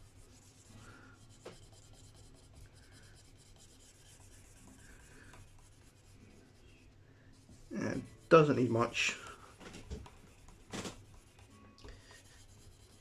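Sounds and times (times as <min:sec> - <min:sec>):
sanding strokes on painted finish: 0:00.0 - 0:06.4, 0:07.3 - 0:09.4, 0:12.2 - 0:13.0.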